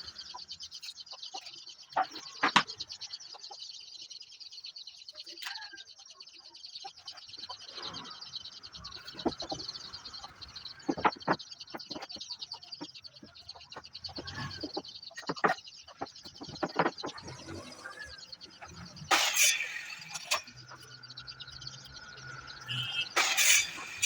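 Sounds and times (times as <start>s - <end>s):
birds chirping: 0.0s - 24.0s
sharp knocks and taps: 10.7s - 13.9s, 14.6s - 17.6s.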